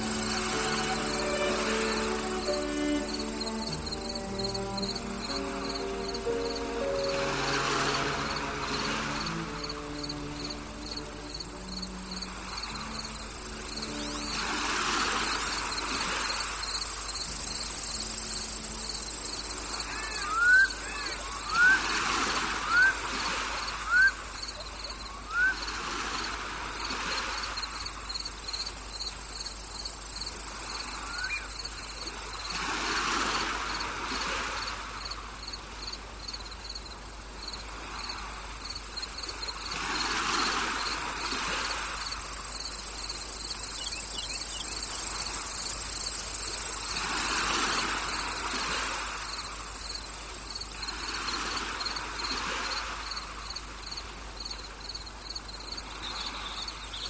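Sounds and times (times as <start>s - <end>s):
continuous high drone: 0.0s - 15.1s
crickets and insects trilling: 0.0s - 57.0s.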